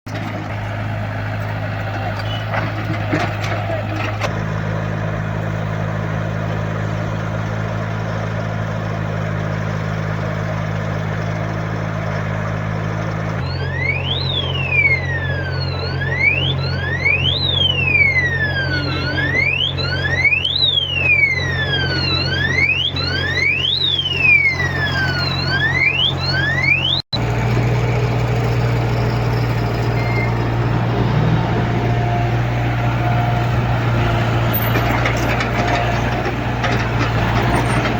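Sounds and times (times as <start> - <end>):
heavy vehicle engine running: 0.1 - 37.9
electronic siren-like alarm: 13.4 - 27.0.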